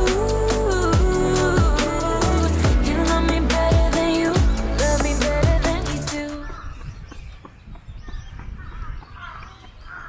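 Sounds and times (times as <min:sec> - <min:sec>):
music track: 0:00.0 - 0:06.3.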